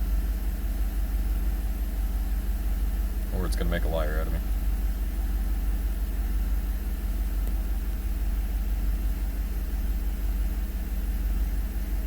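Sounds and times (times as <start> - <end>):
engine idling with low rumble: 0.0 - 12.0.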